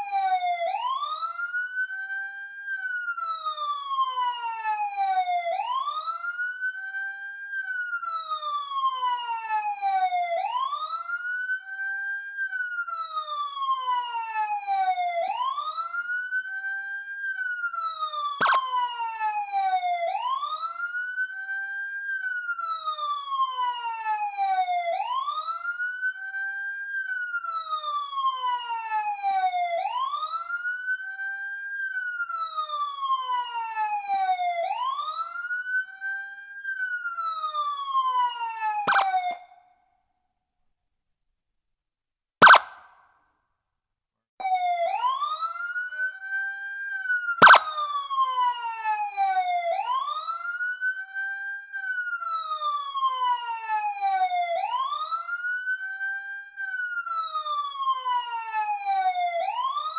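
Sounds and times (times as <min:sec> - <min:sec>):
police siren wailing: 0:00.0 - 0:39.7, 0:42.4 - 0:42.9, 0:44.4 - 0:59.9.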